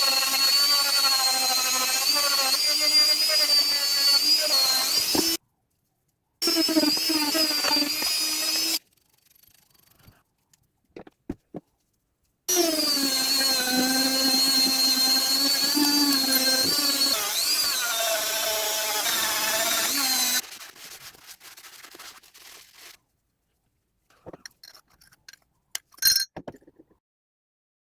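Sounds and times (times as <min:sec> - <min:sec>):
power drill whining: 0:00.0 - 0:05.4, 0:06.4 - 0:08.8, 0:12.5 - 0:20.4
scraping and rubbing: 0:19.6 - 0:23.0.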